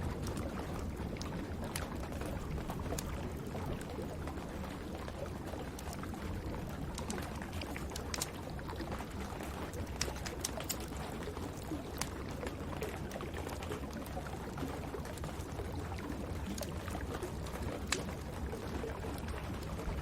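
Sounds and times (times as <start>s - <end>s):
wood fire crackling and popping: 0.2s - 20.0s.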